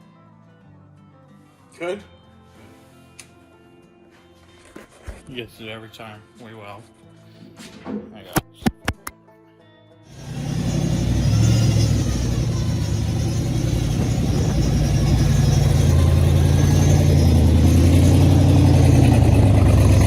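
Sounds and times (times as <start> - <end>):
race car engine idling: 10.2 - 20.0.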